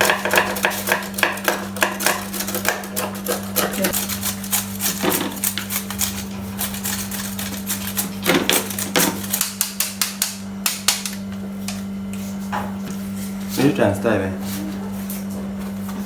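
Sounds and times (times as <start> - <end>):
knife chopping on cutting board: 0.0 - 6.1
steady low hum: 0.0 - 16.0.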